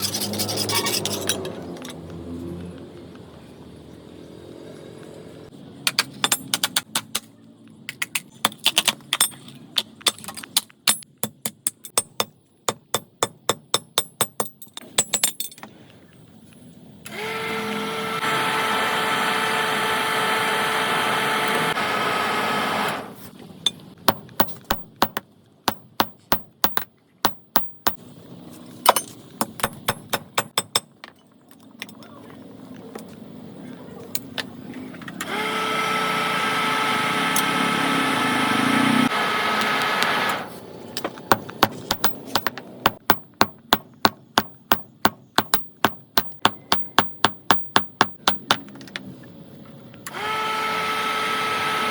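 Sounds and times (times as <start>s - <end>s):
power tool running: 17.1s - 23.2s, 35.2s - 40.5s, 50.1s - 51.9s.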